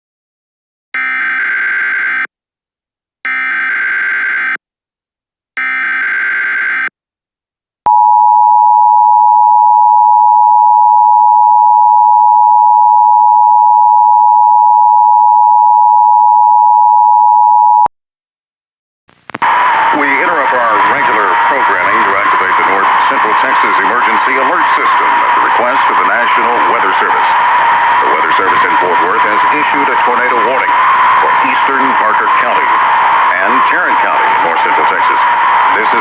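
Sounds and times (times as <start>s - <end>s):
digital data bursts: 1.0s - 2.3s, 3.3s - 4.6s, 5.6s - 6.9s
two-tone attention signal: 1.0s - 2.3s, 3.3s - 4.6s, 5.6s - 6.9s.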